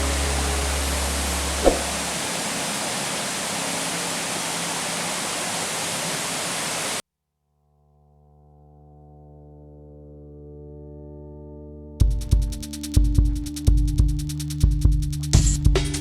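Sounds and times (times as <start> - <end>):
waterfall roaring: 0.0 - 7.0
brief knock: 1.6 - 2.0.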